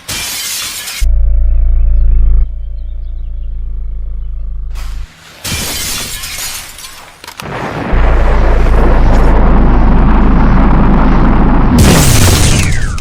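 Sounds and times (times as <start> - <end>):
deep rumble: 1.0 - 5.1, 7.8 - 13.0.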